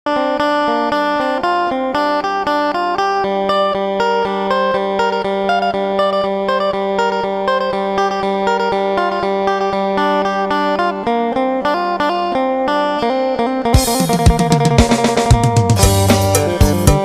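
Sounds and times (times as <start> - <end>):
plucked lute melody: 0.1 - 17.0.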